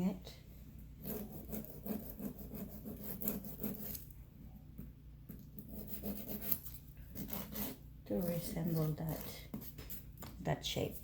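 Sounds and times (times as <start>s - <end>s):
nail file rasping: 1.0s - 4.0s, 5.6s - 10.0s.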